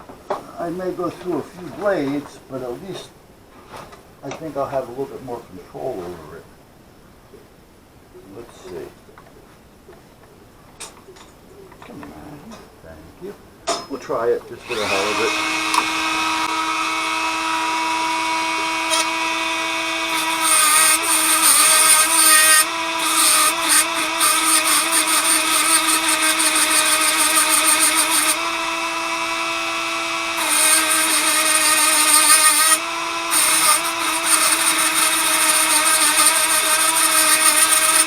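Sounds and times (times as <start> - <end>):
rotary tool whining: 14.6 - 38.0
grinding hiss on metal: 18.6 - 28.4, 30.4 - 38.0.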